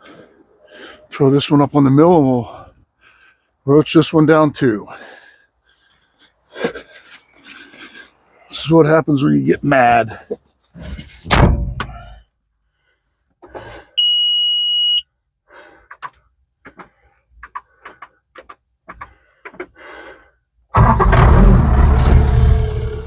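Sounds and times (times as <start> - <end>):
heavy thump: 11.3 - 12.0, 21.0 - 23.0
electronic warning beep: 14.0 - 15.0
light knocks and clicks: 15.9 - 19.7.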